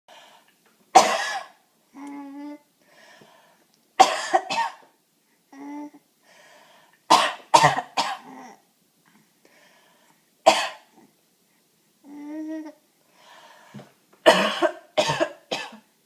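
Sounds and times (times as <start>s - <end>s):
woman coughing: 1.0s - 1.5s, 4.0s - 4.8s, 7.1s - 8.3s, 14.3s - 15.8s.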